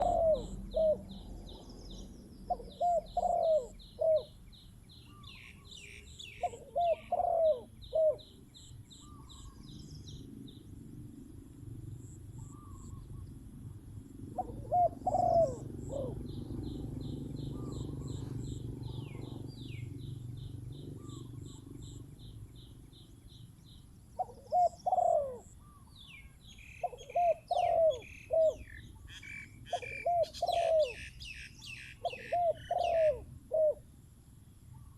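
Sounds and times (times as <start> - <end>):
doves cooing: 0.0 - 1.2, 2.5 - 4.3, 6.4 - 8.3, 14.3 - 20.0, 24.2 - 25.9, 26.8 - 31.1, 32.0 - 33.8
small bird chirping: 0.0 - 11.0, 14.4 - 33.2.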